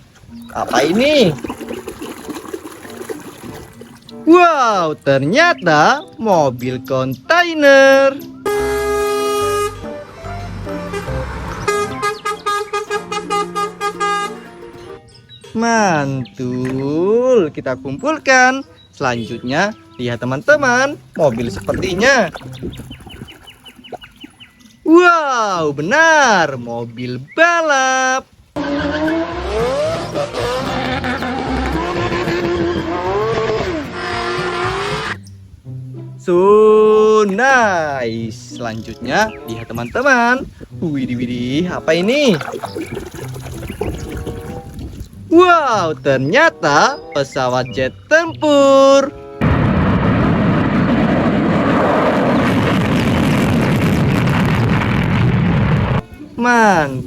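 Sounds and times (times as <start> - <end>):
background music: 0.0 - 22.9, 28.6 - 50.1, 55.8 - 57.0
truck horn short toots: 8.4 - 14.7
truck horn blast: 8.4 - 15.0, 28.6 - 35.2
racing car engine revving: 28.6 - 35.2.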